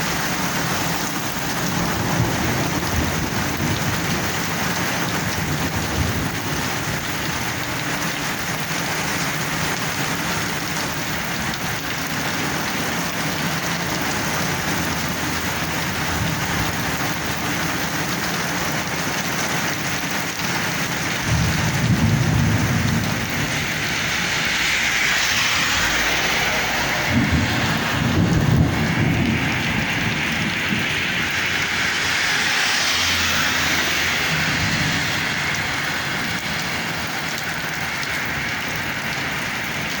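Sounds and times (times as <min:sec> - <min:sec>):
low thunder rumbles: 0:00.0 - 0:12.6, 0:20.0 - 0:32.1
heavy rain pouring: 0:00.0 - 0:40.0.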